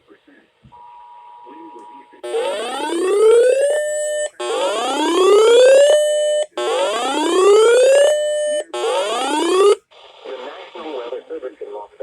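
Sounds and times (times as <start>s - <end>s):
electronic whoop alert tone: 2.2s - 9.8s.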